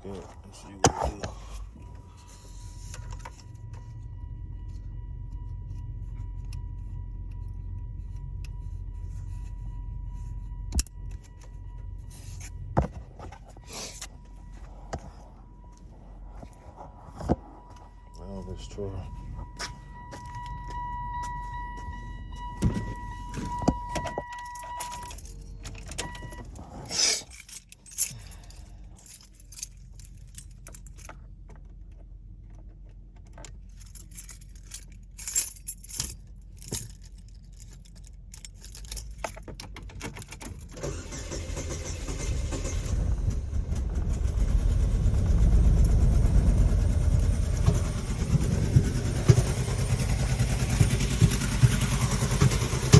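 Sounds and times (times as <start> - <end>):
car engine starting and running: 0.0 - 52.9
car warning chime: 1.5 - 26.5
ignition clicks: 19.4 - 26.6
keys jangling: 23.4 - 31.7, 33.2 - 40.8.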